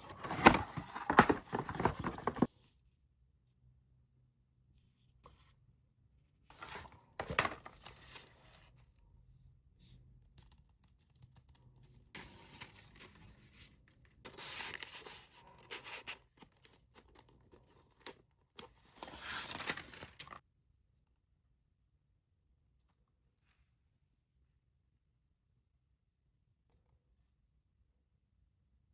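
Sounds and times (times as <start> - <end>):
packaging rustling and tearing: 0.0 - 2.5, 18.8 - 20.4.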